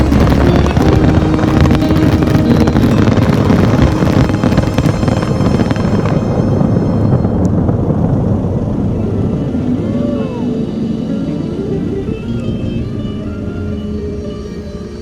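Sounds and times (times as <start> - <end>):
fireworks bursts and crackling: 0.0 - 9.6
low steady noise: 0.0 - 15.0.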